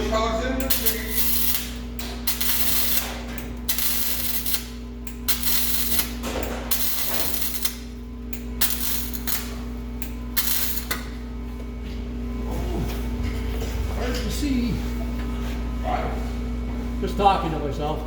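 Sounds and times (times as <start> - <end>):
steady low hum: 0.0 - 18.0
welding arc crackling: 0.6 - 11.2.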